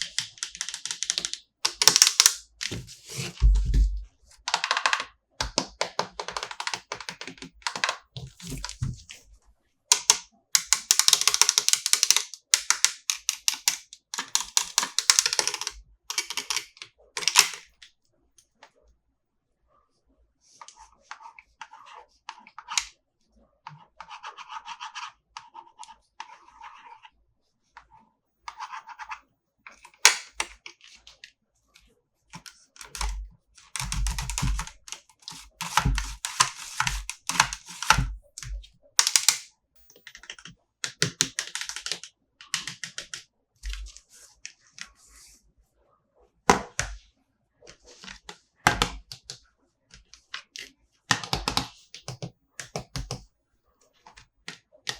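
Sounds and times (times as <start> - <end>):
plastic toys clicking and tapping: 0.0 - 3.6, 4.4 - 9.0, 9.9 - 17.7, 28.5 - 30.6, 32.4 - 43.8, 51.1 - 53.2
low knocks: 3.4 - 4.2
packaging rustling: 7.8 - 9.2.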